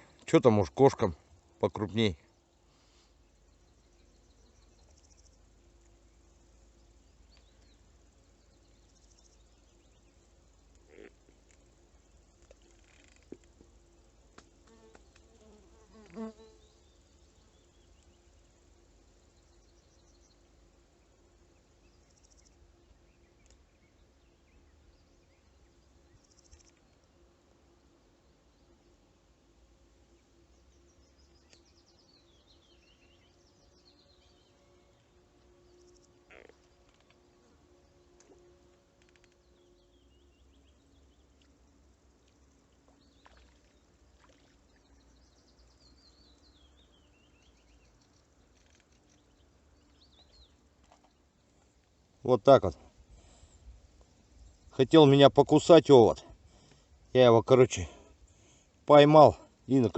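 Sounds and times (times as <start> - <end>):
faint outdoor ambience: 0.0 - 59.9
distant small bird warbling: 35.8 - 37.2.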